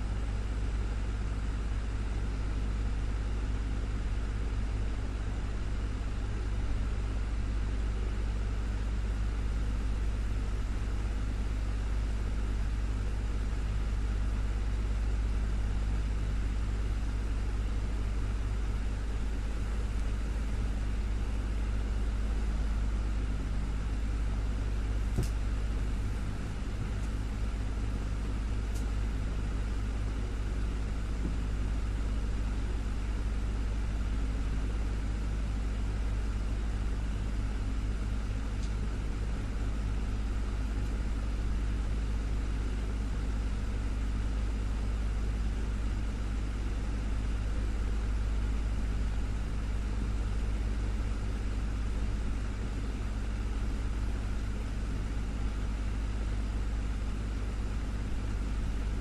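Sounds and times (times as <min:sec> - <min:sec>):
electric fan running: 0:00.0 - 0:59.0.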